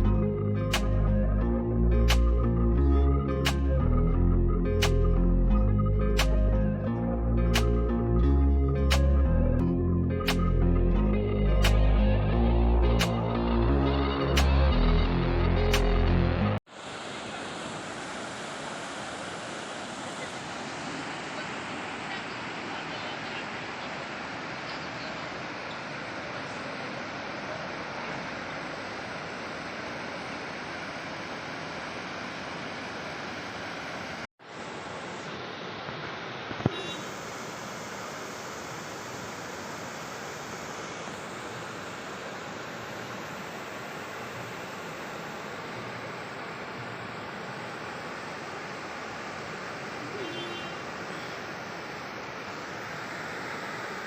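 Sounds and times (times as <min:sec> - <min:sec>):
background music: 0:00.0 - 0:16.6
sharp click: 0:00.8 - 0:01.0, 0:02.1 - 0:02.3, 0:03.5 - 0:03.7, 0:04.8 - 0:05.1, 0:06.2 - 0:06.4, 0:07.6 - 0:07.8, 0:08.9 - 0:09.1, 0:10.3 - 0:10.5, 0:13.0 - 0:13.2
river water flowing: 0:16.6 - 0:54.0.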